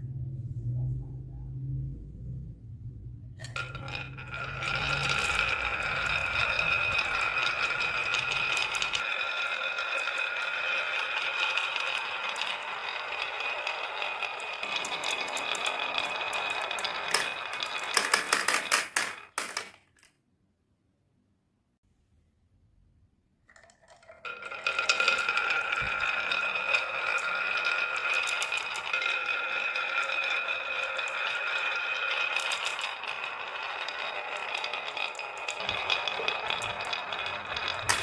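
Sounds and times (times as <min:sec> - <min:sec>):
low hum: 0:00.0 - 0:09.0
marbles rattling down a track: 0:03.4 - 0:20.1, 0:23.6 - 0:38.0.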